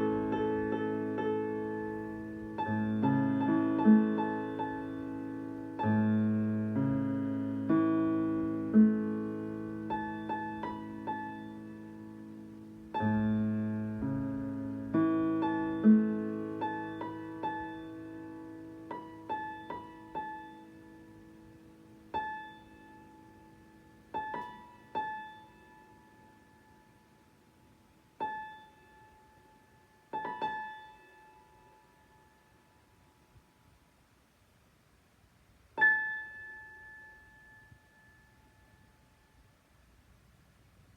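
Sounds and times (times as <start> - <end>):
digital piano playing: 0.0 - 26.6.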